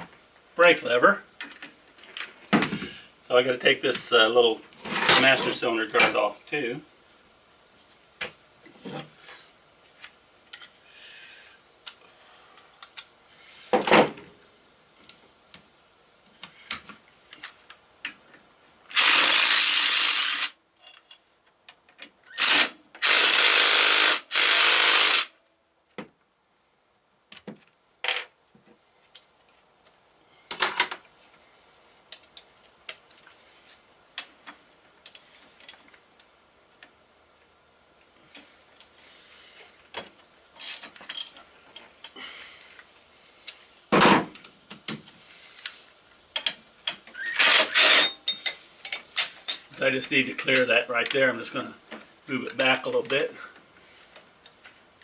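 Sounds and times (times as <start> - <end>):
power drill running: 18.9 - 20.6, 22.4 - 25.3, 47.1 - 48.2
tools and parts clicking: 18.9 - 23.2, 45.6 - 49.7.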